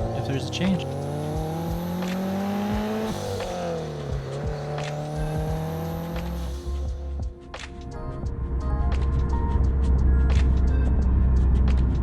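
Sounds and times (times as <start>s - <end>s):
car engine accelerating: 0.0s - 7.3s.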